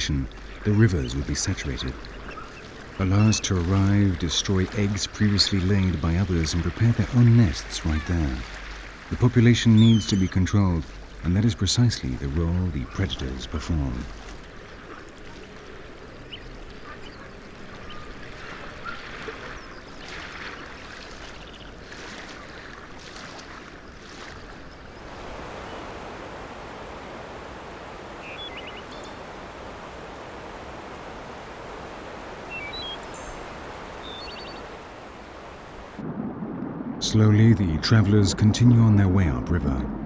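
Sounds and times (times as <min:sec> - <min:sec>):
faint bird chirps: 0:00.0 - 0:05.2, 0:09.6 - 0:11.2, 0:16.0 - 0:22.8, 0:28.2 - 0:29.2, 0:32.5 - 0:33.4, 0:34.0 - 0:34.7
water splashing: 0:00.0 - 0:25.6, 0:32.4 - 0:40.0
river water rushing: 0:00.0 - 0:36.1.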